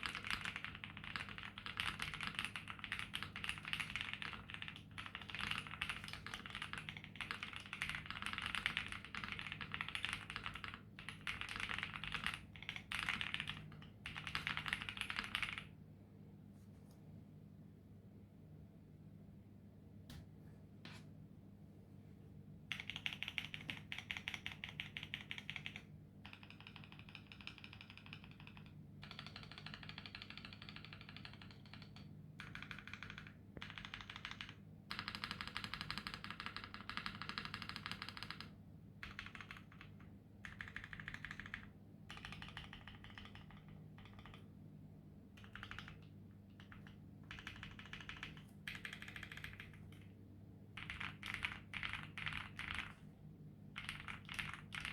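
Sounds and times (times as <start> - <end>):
mechanical keyboard typing thock: 22.7 - 39.9, 40.5 - 44.4, 45.4 - 46.0, 46.6 - 50.0, 50.8 - 52.9, 53.8 - 54.9.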